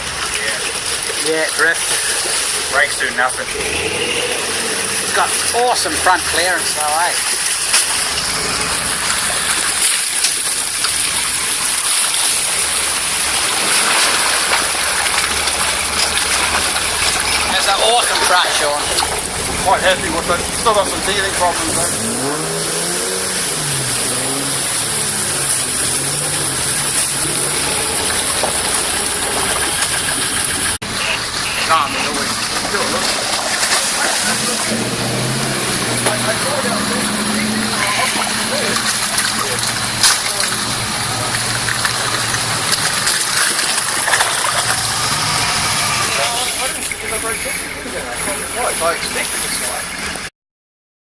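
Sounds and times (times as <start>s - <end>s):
wind and road noise: 0.0s - 47.0s
truck engine running: 0.0s - 50.3s
loud rushing noise: 12.0s - 43.1s.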